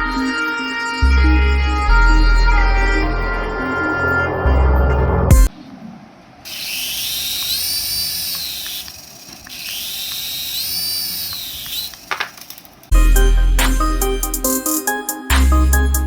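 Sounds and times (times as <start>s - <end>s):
background music: 0.0s - 5.5s, 12.9s - 16.0s
electric toy whirring: 6.5s - 12.9s.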